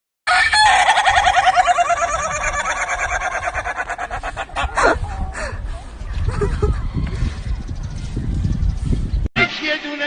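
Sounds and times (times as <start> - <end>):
rooster crowing: 0.3 - 4.4.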